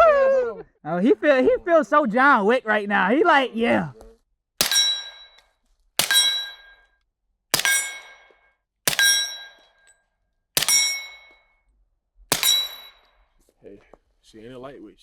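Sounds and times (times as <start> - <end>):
suppressed gunshots: 4.6 - 5.2, 6.0 - 6.7, 7.6 - 8.2, 8.9 - 9.5, 10.6 - 11.2, 12.3 - 13.0
steel target ringing: 4.6 - 5.4, 6.0 - 6.8, 7.6 - 8.3, 8.9 - 9.8, 10.6 - 11.4, 12.3 - 13.1.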